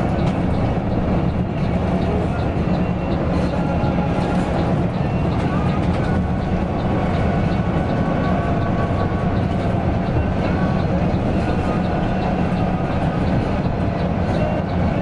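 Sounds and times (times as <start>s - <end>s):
bus engine drone: 0.0s - 15.0s
road and tyre noise: 0.0s - 15.0s.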